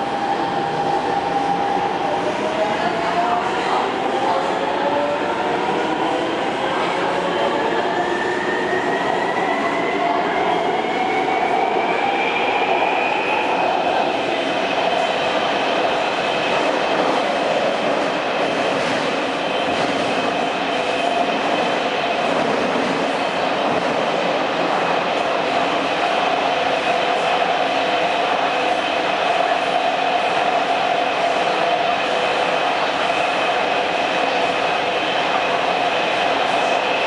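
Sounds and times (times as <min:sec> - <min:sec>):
train inverter whine: 0:00.0 - 0:02.9.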